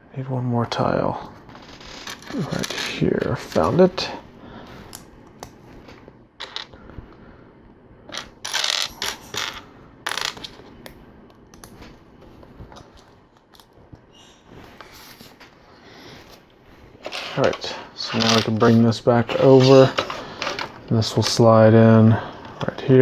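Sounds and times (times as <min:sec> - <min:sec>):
rattle of plastic pieces: 0:08.1 - 0:10.6, 0:17.0 - 0:21.4.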